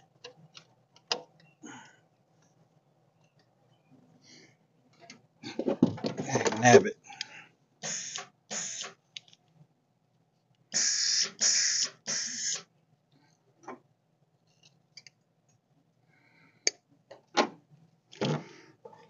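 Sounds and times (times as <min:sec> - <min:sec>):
welding gas hissing: 0:07.8 - 0:08.9, 0:10.8 - 0:12.6.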